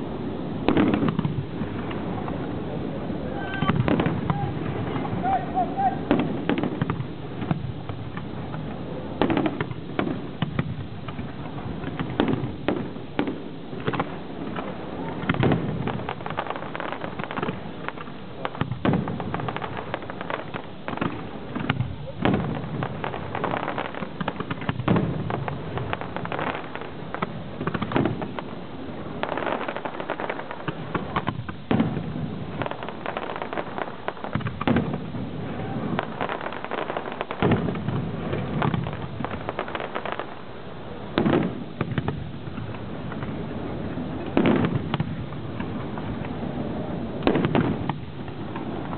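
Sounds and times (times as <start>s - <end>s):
fireworks bangs and crackles: 0.0s - 48.9s.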